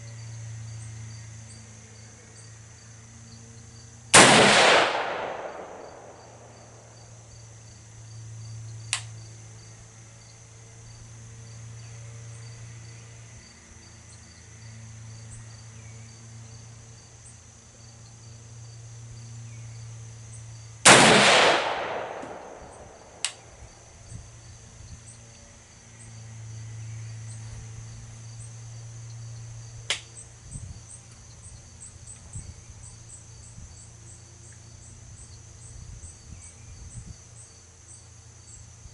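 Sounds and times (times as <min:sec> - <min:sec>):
insects and crickets chirping: 0:00.0 - 0:38.9
rifle shot with echo: 0:04.2 - 0:06.9, 0:20.9 - 0:23.4
faint sharp clicks: 0:08.9 - 0:09.1, 0:23.2 - 0:23.4.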